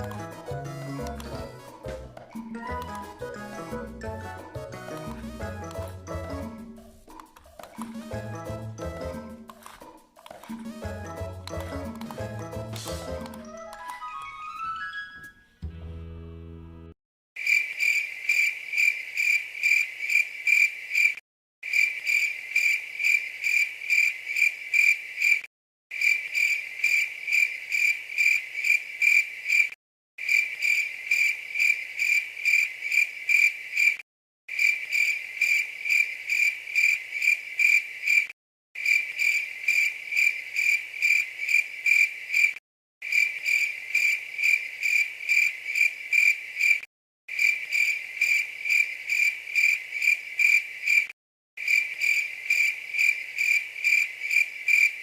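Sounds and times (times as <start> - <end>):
cricket chirping: 26.0 - 46.8, 47.4 - 55.0.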